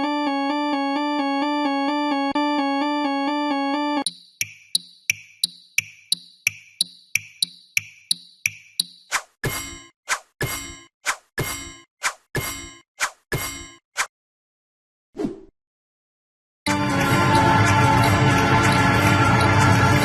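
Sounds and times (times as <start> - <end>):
two-pitch alarm tone: 1.4 - 9.9.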